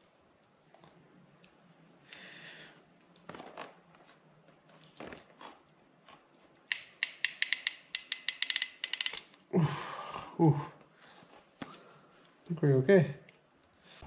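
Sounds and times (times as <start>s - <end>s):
clamp pliers clicking: 6.7s - 9.4s.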